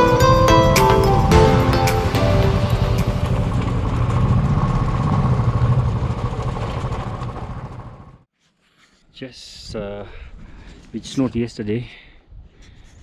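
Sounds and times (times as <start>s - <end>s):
motorcycle engine running: 1.3s - 8.2s.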